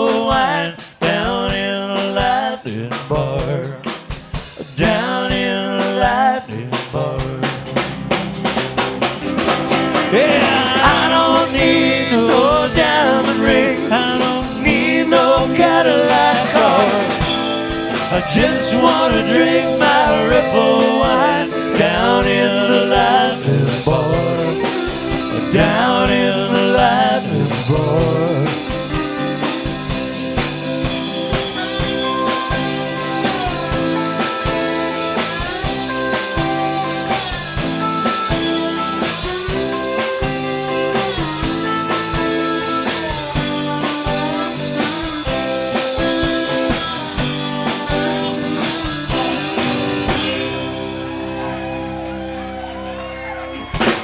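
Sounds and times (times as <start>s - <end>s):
person singing: 0.0s - 7.8s, 9.8s - 30.0s, 38.5s - 51.9s
country-rock band playing: 0.0s - 54.0s
drum beat: 7.0s - 54.0s.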